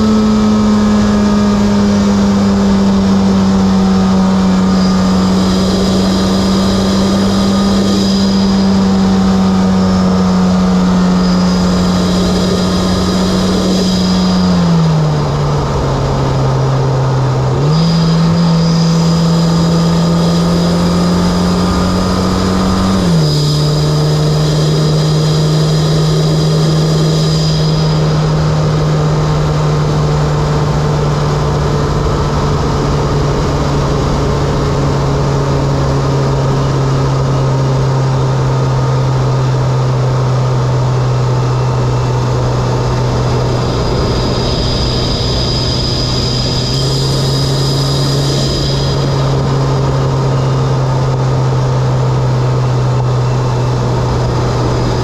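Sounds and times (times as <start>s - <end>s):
car engine running: 0.0s - 55.0s
faint high whistle: 4.7s - 9.8s, 11.0s - 15.0s, 17.6s - 28.5s, 42.8s - 51.6s.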